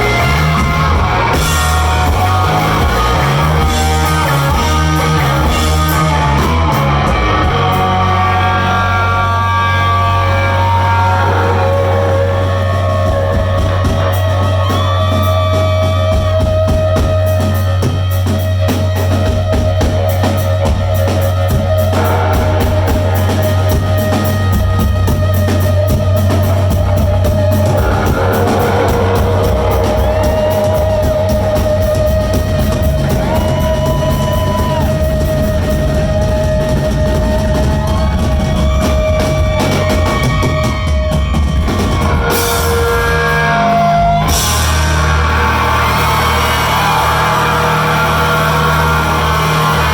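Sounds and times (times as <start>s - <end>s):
lead guitar bending long notes: 0.0s - 49.9s
live rock band playing: 0.0s - 49.9s.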